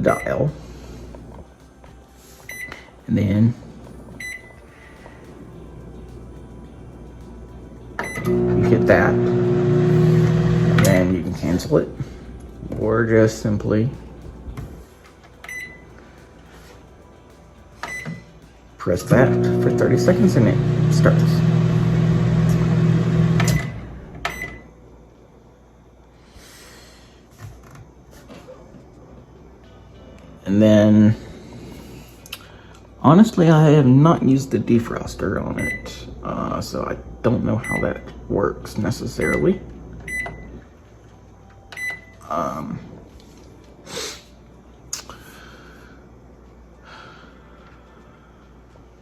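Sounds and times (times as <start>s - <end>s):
microwave electronic beep: 2.5s - 2.8s, 4.2s - 4.7s, 7.9s - 11.2s, 15.4s - 16.0s, 17.8s - 18.3s, 19.0s - 24.7s, 35.5s - 36.1s, 37.2s - 38.3s, 39.0s - 40.6s, 41.7s - 42.3s
microwave oven humming: 3.6s - 14.9s, 17.8s - 26.1s
person sniffing: 43.8s - 44.4s.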